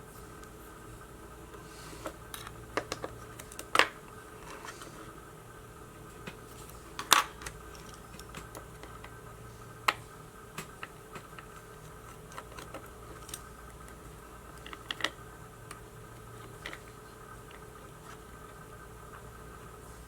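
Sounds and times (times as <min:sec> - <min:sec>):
faint electrical hum: 0:00.0 - 0:20.0
small tools clicking and tapping: 0:02.0 - 0:04.7, 0:06.7 - 0:09.2, 0:10.6 - 0:14.0, 0:14.6 - 0:15.8.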